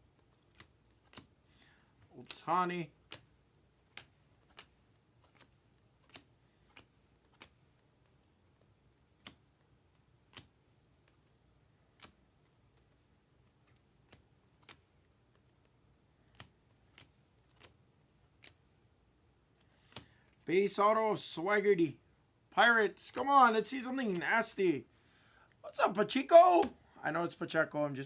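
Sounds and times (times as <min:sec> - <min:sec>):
cards flipping with soft clicks: 0:00.0 - 0:20.5, 0:22.6 - 0:24.5.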